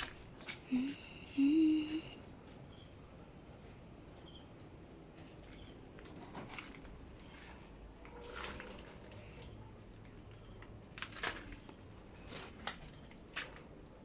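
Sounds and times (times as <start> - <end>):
person humming: 0.6 - 2.2.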